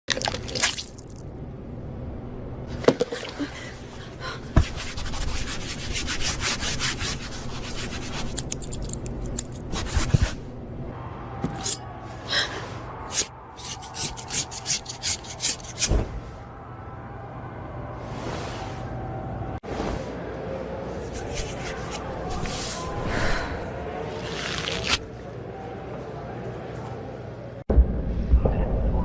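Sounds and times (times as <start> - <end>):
rubbing and scraping strokes: 4.6 - 10.4, 13.1 - 16.0, 20.9 - 23.0.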